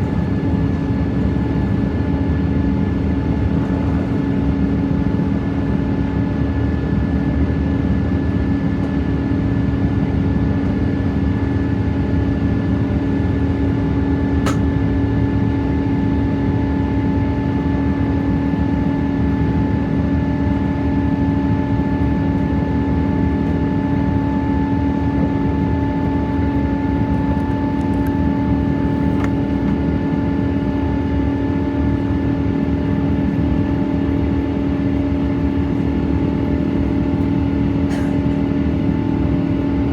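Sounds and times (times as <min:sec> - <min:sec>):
airplane cabin engine drone: 0:00.0 - 0:39.9.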